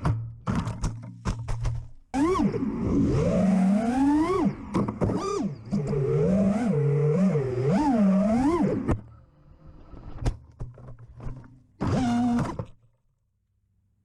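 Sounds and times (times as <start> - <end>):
drone motors whining: 2.2 - 10.2.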